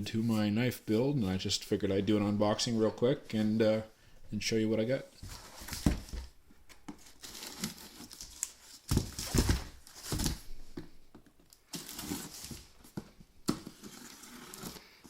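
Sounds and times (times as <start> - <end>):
tearing packing tape and cardboard: 11.7 - 12.7, 13.5 - 15.0.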